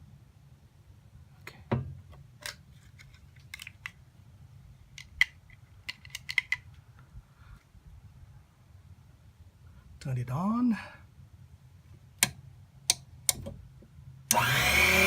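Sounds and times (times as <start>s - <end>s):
small parts clicking and tapping: 2.4s - 4.0s, 4.9s - 6.8s.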